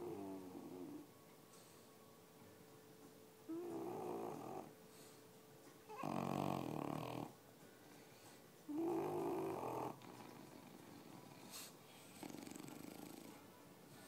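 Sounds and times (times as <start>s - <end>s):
dog snoring: 0.0s - 1.1s, 3.5s - 4.7s, 5.9s - 7.4s, 8.7s - 14.0s.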